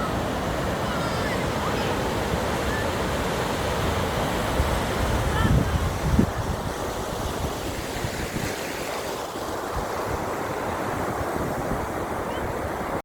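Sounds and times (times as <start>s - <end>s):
wind buffeting microphone: 0.0s - 8.6s
ocean surf breaking: 0.0s - 13.0s.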